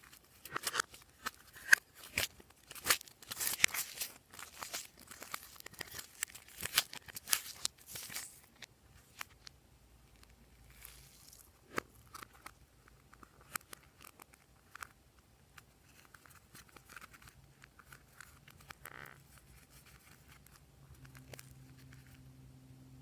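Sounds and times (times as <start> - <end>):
crinkle: 0.0 - 9.5, 10.1 - 22.2
faint low hum: 1.1 - 23.0.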